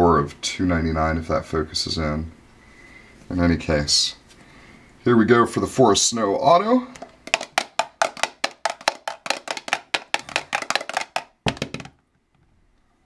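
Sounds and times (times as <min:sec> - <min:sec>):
die clattering on hard surface: 0:07.0 - 0:12.0.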